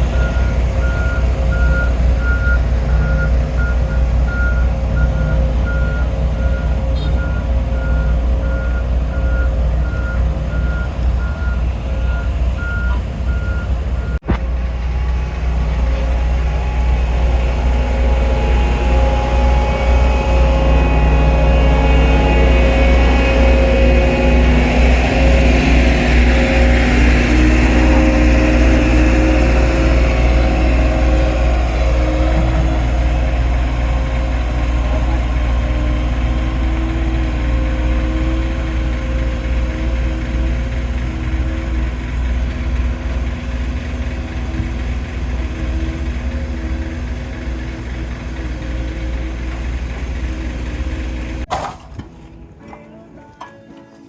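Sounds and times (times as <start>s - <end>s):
heavy vehicle engine rumbling: 0.0s - 54.0s
reversing alarm beeping: 0.1s - 14.2s.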